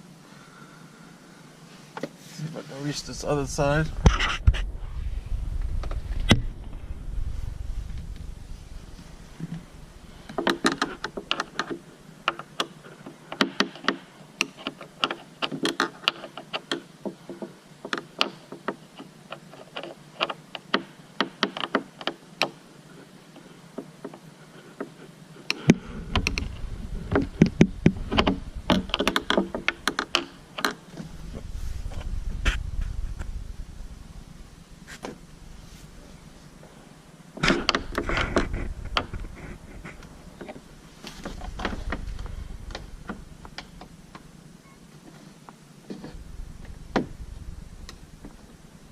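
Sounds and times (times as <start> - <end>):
low rumbling handling noise: 2.0 - 15.7, 23.7 - 48.9.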